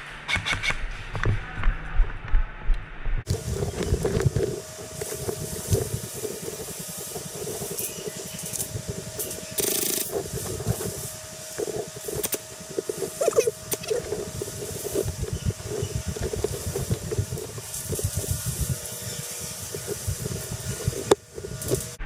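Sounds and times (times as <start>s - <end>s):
sharp clicks: 9.6s - 10.2s.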